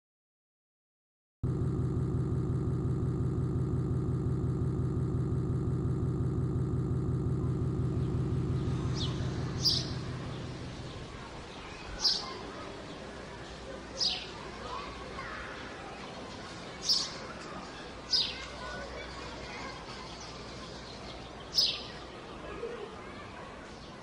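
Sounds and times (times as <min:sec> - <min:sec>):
engine idling: 0:01.4 - 0:15.5
bird chirps: 0:08.0 - 0:14.4, 0:20.1 - 0:22.1.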